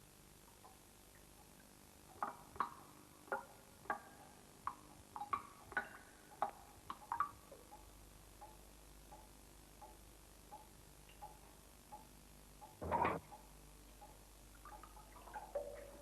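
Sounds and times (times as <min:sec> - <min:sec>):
water dripping plinks: 0:08.4 - 0:16.0.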